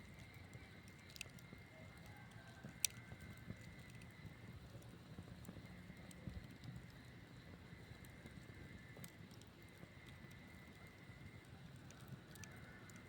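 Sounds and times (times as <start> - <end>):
campfire burning: 0.0 - 13.0
fire crackles and pops: 0.0 - 13.0.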